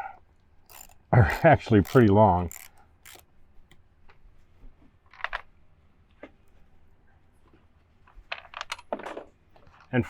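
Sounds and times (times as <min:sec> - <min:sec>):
small ratchet clicking: 0:00.7 - 0:03.3.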